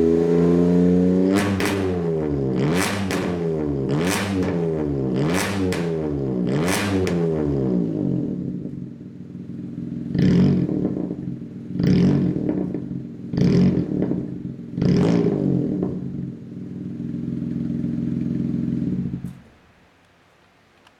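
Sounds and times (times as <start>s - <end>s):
car engine revving: 0.0s - 19.5s
car engine idling: 7.9s - 19.6s.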